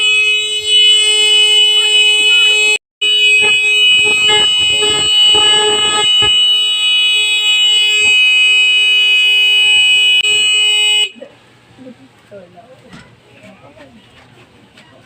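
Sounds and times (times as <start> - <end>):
alarm buzzer steady tone: 0.0 - 11.1
rough noise: 3.4 - 6.5.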